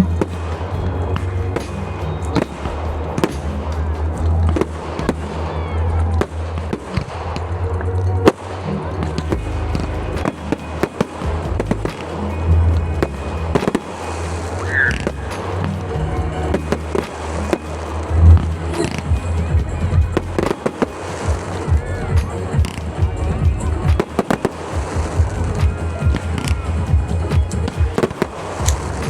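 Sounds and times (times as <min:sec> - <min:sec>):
fireworks bursting: 0:00.0 - 0:29.0
loud music with heavy bass: 0:00.0 - 0:29.0.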